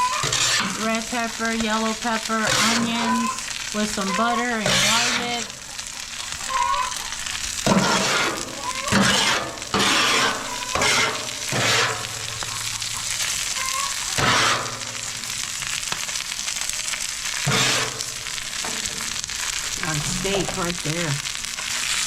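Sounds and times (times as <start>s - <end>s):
food sizzling on a griddle: 0.0s - 22.0s
spatula scraping griddle: 0.0s - 22.0s.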